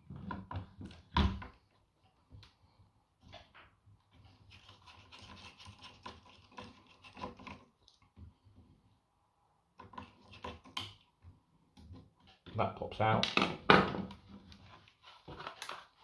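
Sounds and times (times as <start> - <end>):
screwdriver scratching and rubbing: 4.2 - 7.6.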